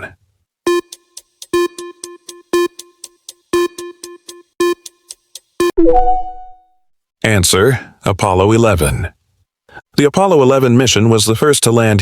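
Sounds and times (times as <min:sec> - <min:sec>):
electronic countdown beats: 0:00.7 - 0:06.7
faint ticks: 0:00.8 - 0:05.6.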